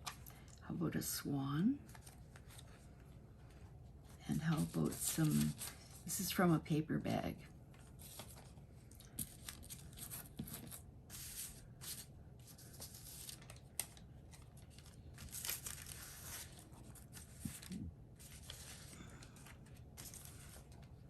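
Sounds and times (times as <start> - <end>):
paper rustling and crinkling: 1.8 - 3.7, 4.3 - 6.2, 7.7 - 8.6, 9.2 - 21.0.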